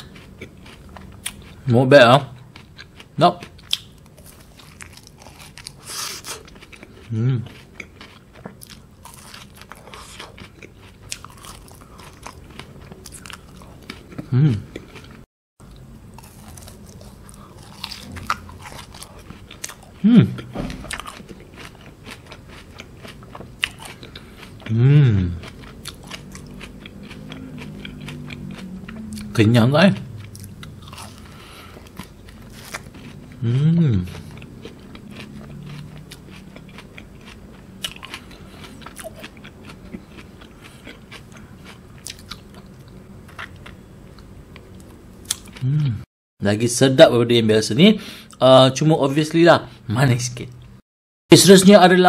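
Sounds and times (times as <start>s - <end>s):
crunchy chewing: 0.0s - 45.8s
person humming mm: 7.1s - 7.5s, 14.3s - 14.7s, 20.0s - 20.5s, 24.7s - 25.4s, 33.4s - 34.2s, 45.6s - 46.1s.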